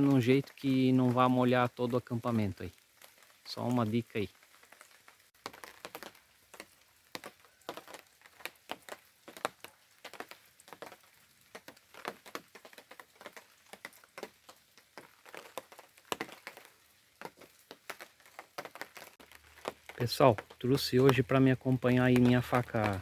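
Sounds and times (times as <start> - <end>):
raindrops tapping on plastic tarp: 0.0 - 23.0.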